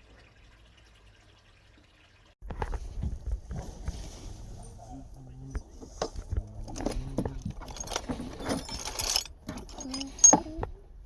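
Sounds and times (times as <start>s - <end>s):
metal objects clinking: 6.6s - 10.6s.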